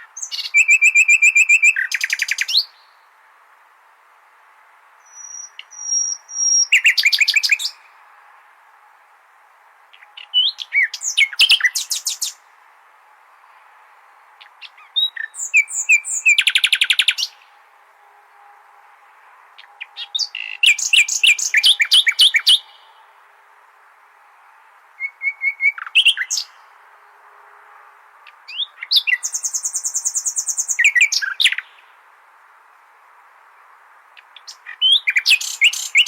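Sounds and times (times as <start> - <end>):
nightingale singing: 0.0 - 3.1, 5.0 - 8.0, 9.9 - 12.6, 14.2 - 17.6, 19.6 - 23.1, 24.2 - 26.8, 28.2 - 32.0, 33.5 - 36.0.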